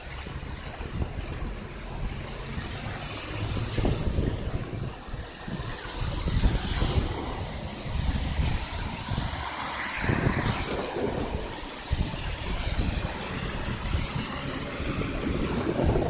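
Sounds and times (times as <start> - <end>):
gusty wind buffeting microphone: 0.0 - 16.0
heavy rain hiss: 0.0 - 16.0.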